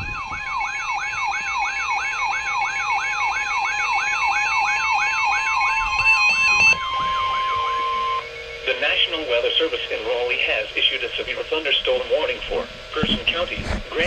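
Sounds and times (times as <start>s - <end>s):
electronic siren alert tone: 0.0s - 9.4s.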